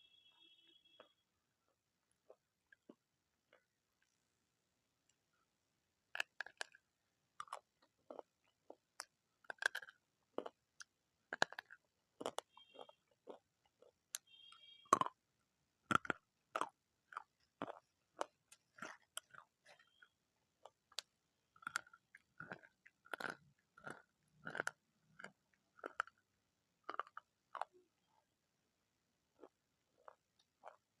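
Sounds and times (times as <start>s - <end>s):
person chewing crunchy food: 6.1s - 15.2s, 15.8s - 28.0s, 29.2s - 31.0s.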